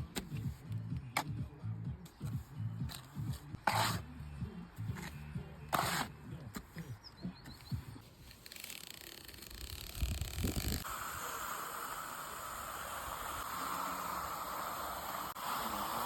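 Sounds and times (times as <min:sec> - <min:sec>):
tools scraping and tapping render: 0:02.2 - 0:04.0, 0:04.9 - 0:07.7
steady hiss: 0:10.7 - 0:16.0.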